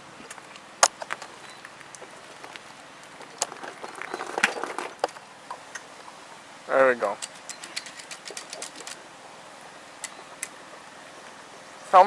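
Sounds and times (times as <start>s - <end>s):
footsteps: 0.2s - 5.2s
ticks and rustling: 0.2s - 5.9s, 7.1s - 9.0s.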